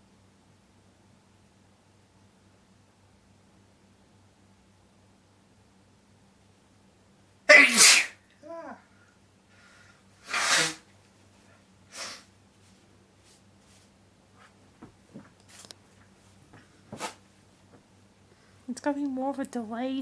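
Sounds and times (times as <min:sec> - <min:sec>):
person sneezing: 0:07.5 - 0:08.2, 0:10.2 - 0:10.9, 0:11.9 - 0:12.3.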